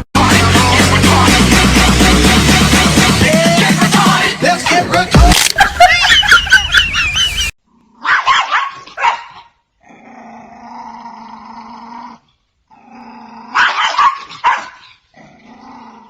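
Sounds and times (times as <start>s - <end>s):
dog barking: 8.0s - 9.6s, 13.5s - 15.0s
dog growling: 9.8s - 13.8s, 15.1s - 16.0s.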